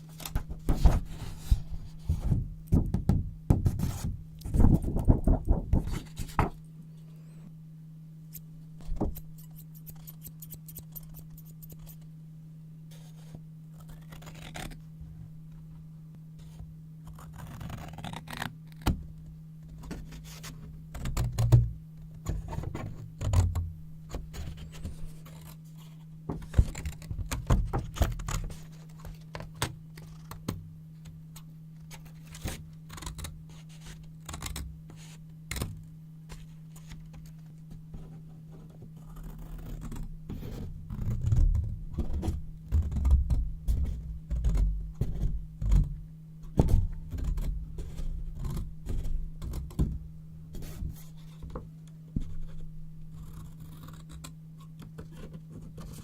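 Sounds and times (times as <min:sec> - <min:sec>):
steady low hum: 0:00.0 - 0:56.0
scissors snipping paper: 0:09.2 - 0:12.0.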